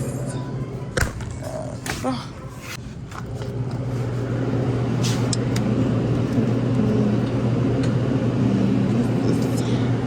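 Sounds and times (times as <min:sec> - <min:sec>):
car engine humming: 0:03.4 - 0:10.0.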